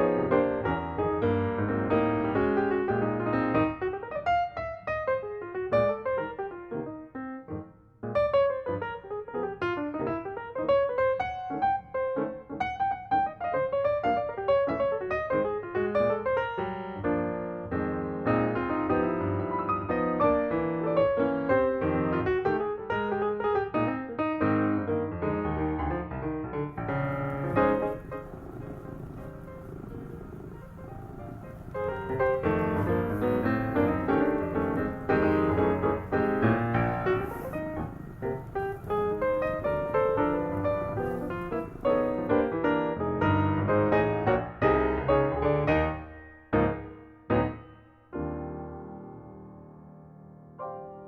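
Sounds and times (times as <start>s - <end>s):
piano music: 0.0s - 51.0s.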